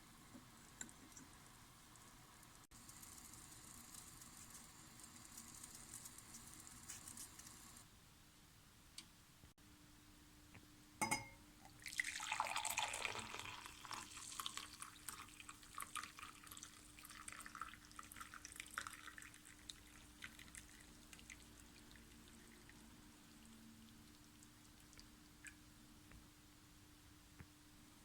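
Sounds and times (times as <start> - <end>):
glass clink: 11.0 - 11.4
liquid pouring and dripping: 11.6 - 25.7.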